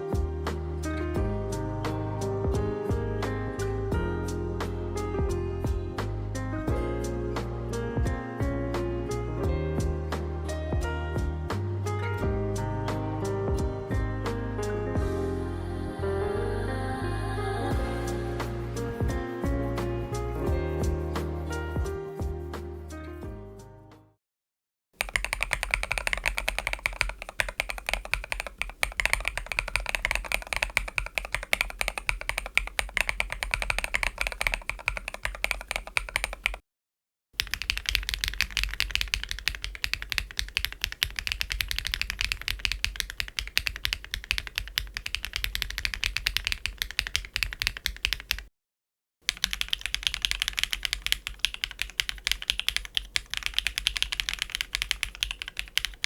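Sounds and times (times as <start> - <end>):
fast mechanical keyboard typing: 25.0 - 36.6, 37.4 - 48.5, 49.3 - 56.0.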